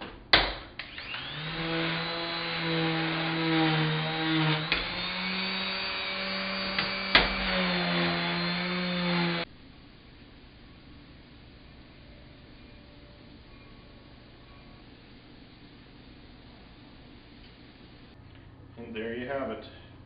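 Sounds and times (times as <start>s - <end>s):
power tool motor humming: 0.8s - 9.5s.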